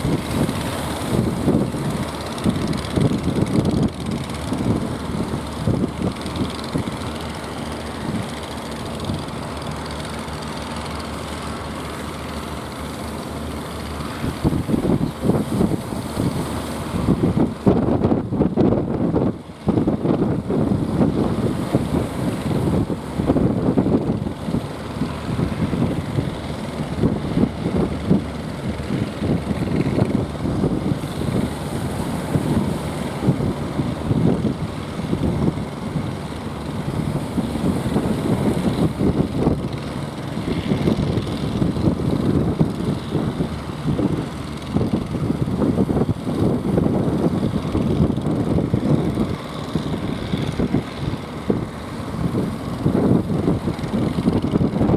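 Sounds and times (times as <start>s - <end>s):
boat engine running: 0.0s - 54.9s
wind buffeting microphone: 0.0s - 54.9s.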